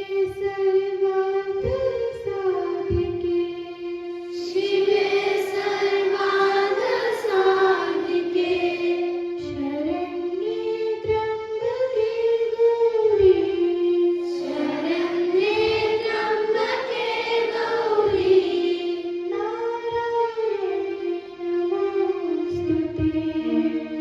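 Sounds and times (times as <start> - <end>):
children singing: 0.0 - 24.0
music: 0.0 - 24.0.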